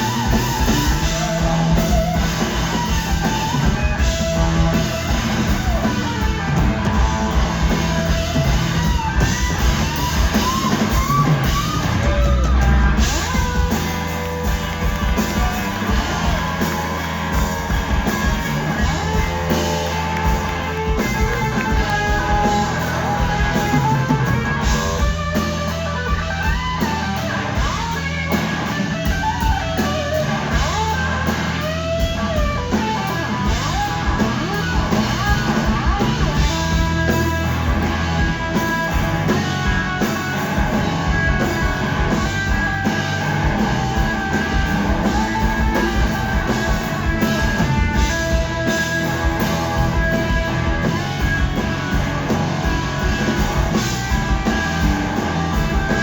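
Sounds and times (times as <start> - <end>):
blues-rock band playing: 0.0 - 56.0
electric guitar lead line: 0.0 - 56.0.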